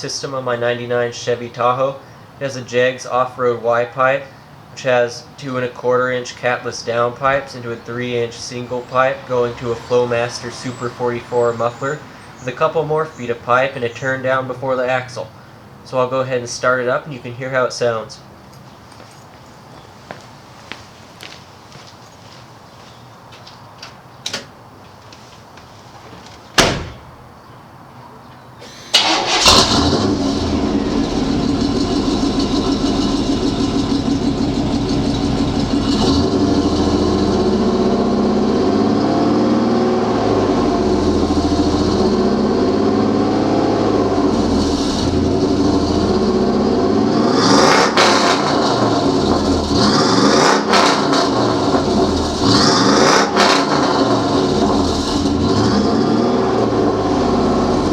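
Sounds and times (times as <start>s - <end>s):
engine revving: 7.9s - 12.4s, 28.9s - 57.9s
engine starting and idling: 28.6s - 38.6s, 43.9s - 46.6s.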